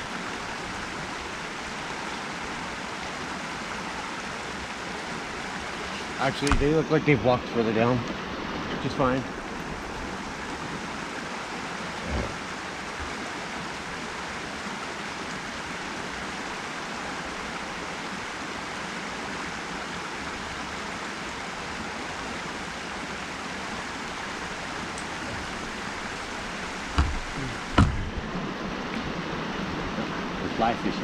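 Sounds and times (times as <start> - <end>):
river water flowing: 0.0 - 31.0
thump: 27.0 - 28.1.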